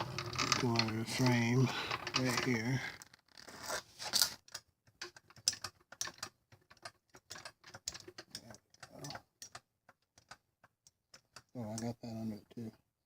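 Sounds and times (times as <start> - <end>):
floor jack clicking: 0.0 - 2.6.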